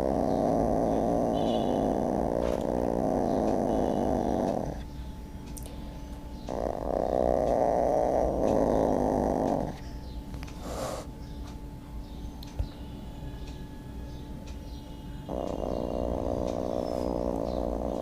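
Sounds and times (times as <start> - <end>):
cat grainy rasping: 0.0 - 4.9, 6.5 - 9.8, 15.3 - 18.0
small click: 12.4 - 12.8.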